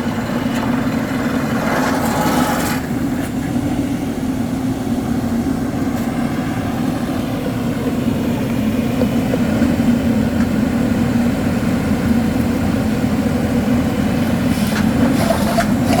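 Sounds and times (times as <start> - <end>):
rock drilling machine engine running: 13.3 - 16.0.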